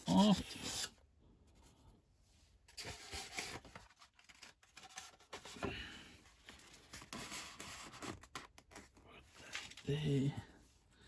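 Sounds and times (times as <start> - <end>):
plastic packaging scraping and rustling: 2.7 - 5.6.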